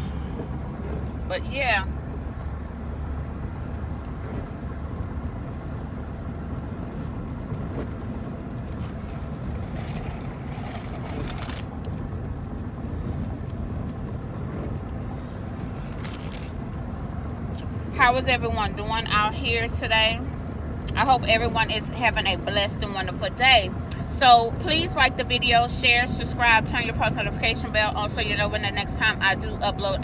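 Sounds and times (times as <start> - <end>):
car road and engine noise: 0.0 - 30.0.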